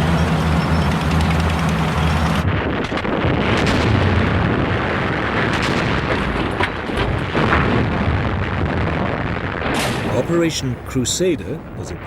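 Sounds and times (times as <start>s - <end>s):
rumble of battle noise: 0.0s - 12.0s
gunshots and blasts: 2.4s - 10.4s.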